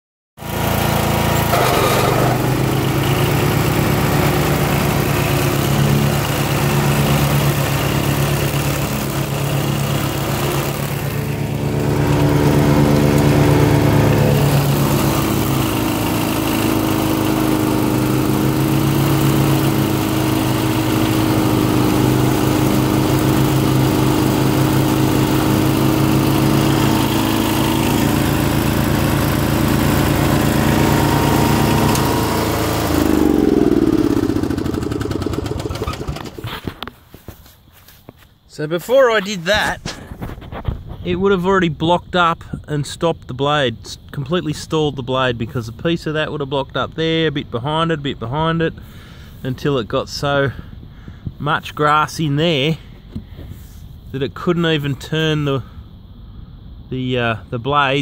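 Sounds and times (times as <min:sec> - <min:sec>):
ride-on mower engine running: 0:00.4 - 0:38.0.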